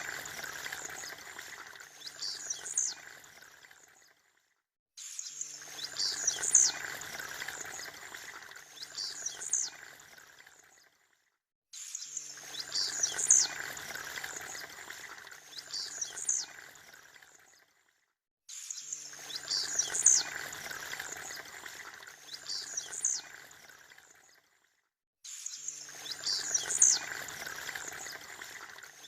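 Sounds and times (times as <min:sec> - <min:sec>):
bird high buzzy song notes: 0:25.3 - 0:27.7.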